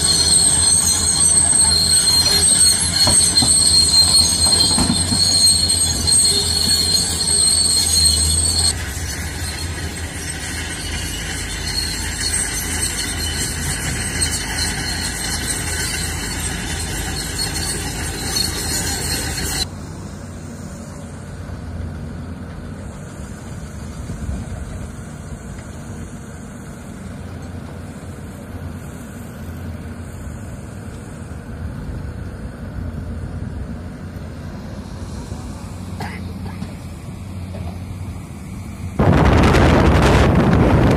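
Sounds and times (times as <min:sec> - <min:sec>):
high-pitched metallic squeal: 0:00.0 - 0:21.2
excavator engine rumble: 0:00.0 - 0:40.9.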